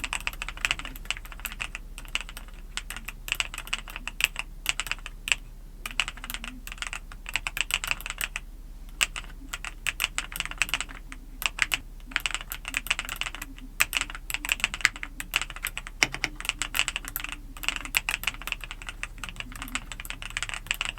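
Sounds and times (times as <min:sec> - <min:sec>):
mechanical keyboard typing: 0:00.0 - 0:08.4, 0:09.0 - 0:20.9.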